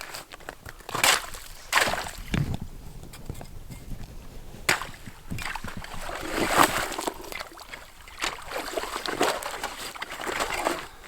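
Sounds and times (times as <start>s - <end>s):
water sloshing: 0.0s - 11.0s.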